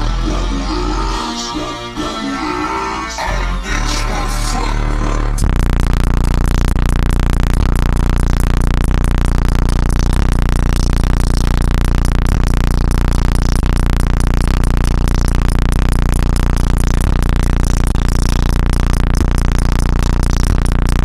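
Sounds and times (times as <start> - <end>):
loud hip-hop with heavy bass: 0.0 - 21.0.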